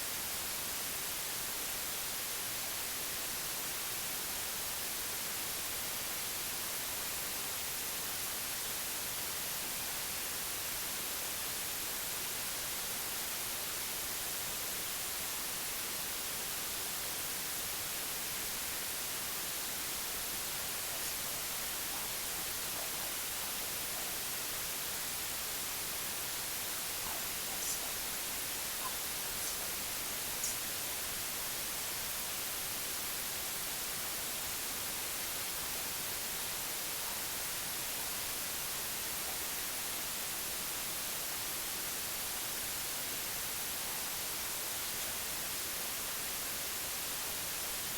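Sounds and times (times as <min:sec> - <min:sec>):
white noise hiss: 0:00.0 - 0:47.9.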